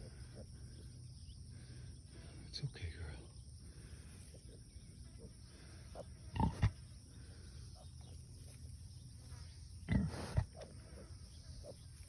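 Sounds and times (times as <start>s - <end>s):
pig grunting: 4.3s - 6.9s, 9.8s - 11.8s.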